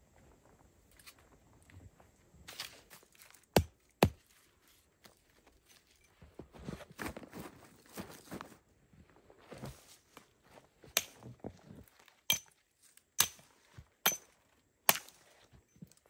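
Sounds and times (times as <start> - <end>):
footsteps crunching in snow: 4.2 - 10.9.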